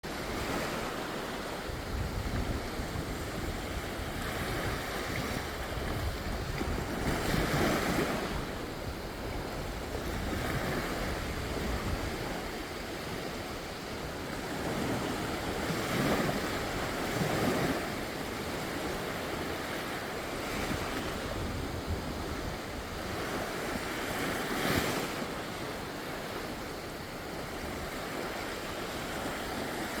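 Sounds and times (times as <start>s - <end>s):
gentle waves on a sandy beach: 0.0s - 30.0s
wind buffeting microphone: 0.1s - 30.0s.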